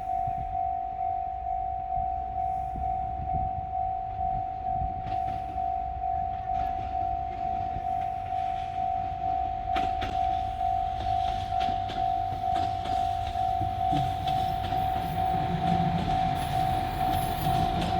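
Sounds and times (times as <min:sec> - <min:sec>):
diesel train rumble: 0:00.0 - 0:17.9
level-crossing warning bell: 0:00.0 - 0:17.9
train wheels clicking over rail joints: 0:06.3 - 0:17.9.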